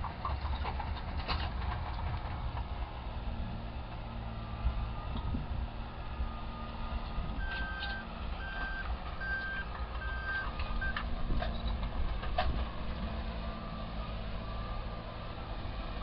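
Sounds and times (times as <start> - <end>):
heavy vehicle engine running: 0.0 - 16.0
reversing alarm beeps: 7.4 - 11.0.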